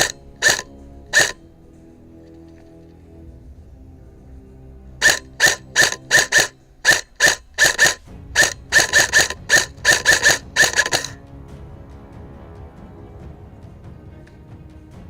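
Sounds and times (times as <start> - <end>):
airsoft gun firing: 5.0 - 11.2.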